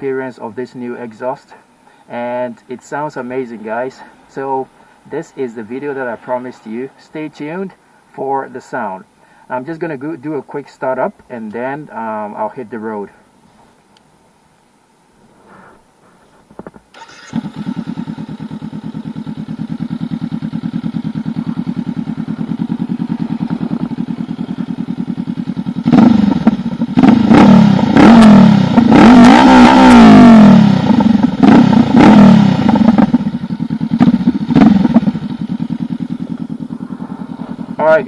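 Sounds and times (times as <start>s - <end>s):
motorcycle engine revving and idling: 17.0s - 38.0s.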